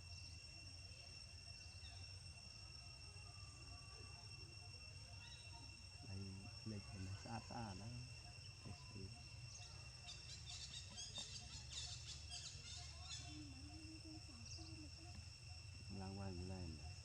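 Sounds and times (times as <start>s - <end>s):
high insect drone: 0.0s - 17.0s
rapid high chirping calls: 9.5s - 13.5s.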